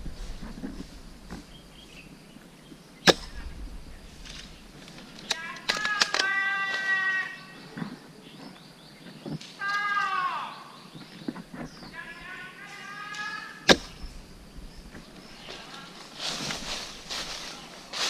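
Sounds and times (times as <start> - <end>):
sharp crack: 3.0 - 7.0, 13.2 - 17.6.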